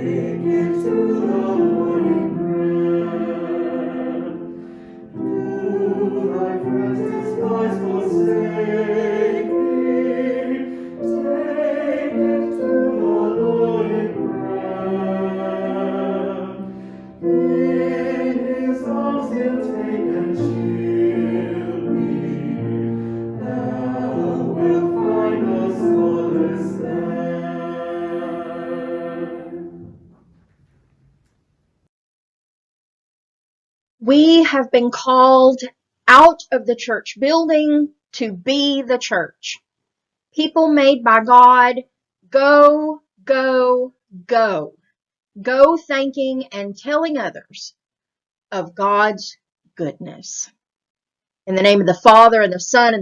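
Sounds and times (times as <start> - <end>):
choir singing: 0.0 - 30.1.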